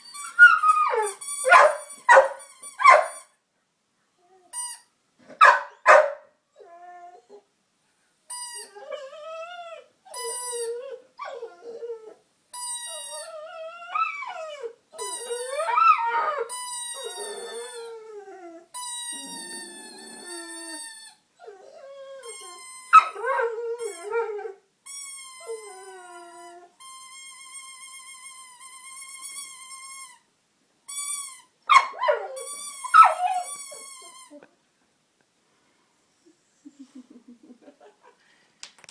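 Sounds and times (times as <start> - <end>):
sharp dog cry: 0.4 - 3.2, 5.4 - 6.2.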